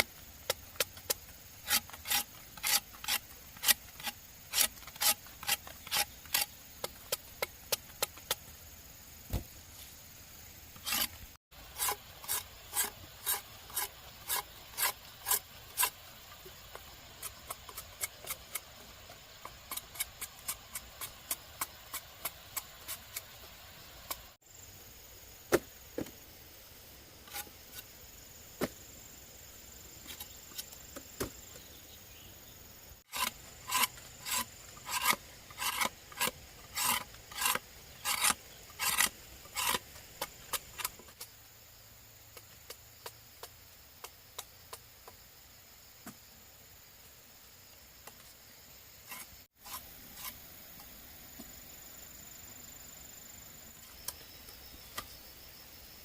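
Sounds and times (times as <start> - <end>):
hand tool rasping on wood: 1.6 - 6.5, 10.8 - 16.0, 33.1 - 41.0.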